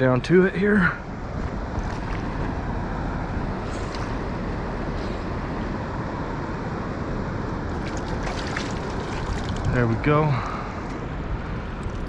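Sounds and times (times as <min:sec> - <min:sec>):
wind rumble on microphone: 0:00.0 - 0:12.0
river current rushing: 0:01.0 - 0:11.6.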